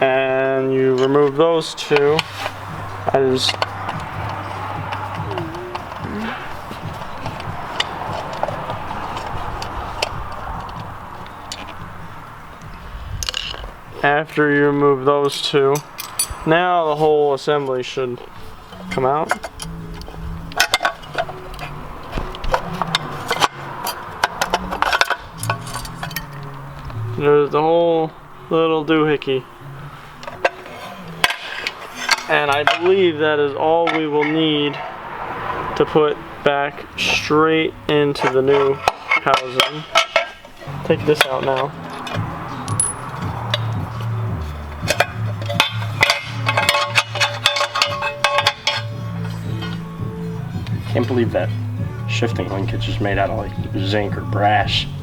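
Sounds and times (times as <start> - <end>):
background music with bass line: 0.0 - 14.8, 18.0 - 33.6, 35.8 - 55.0
metal parts clicking and clinking: 13.2 - 13.7, 15.3 - 16.5, 18.7 - 26.6, 30.2 - 32.9, 38.2 - 40.6, 41.2 - 43.8, 44.7 - 49.8.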